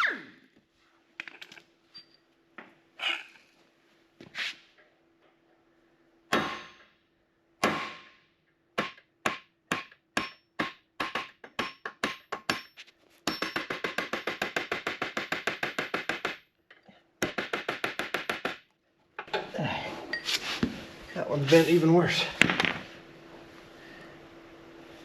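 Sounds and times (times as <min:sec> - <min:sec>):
hammer striking metal pin: 0:08.8 - 0:16.2.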